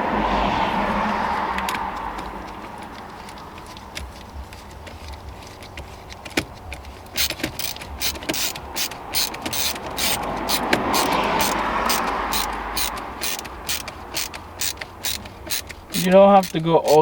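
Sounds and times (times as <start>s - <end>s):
ratchet clicking: 5.6s - 17.0s.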